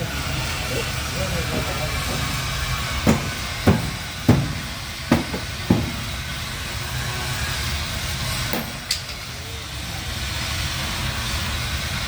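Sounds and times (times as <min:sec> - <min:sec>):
sharp knocks: 0:03.0 - 0:06.2.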